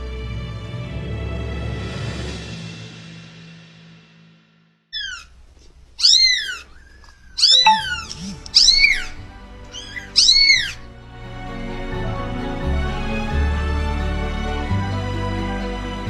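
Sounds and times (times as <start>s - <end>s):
kitten meowing: 5.0s - 5.3s, 6.0s - 10.8s.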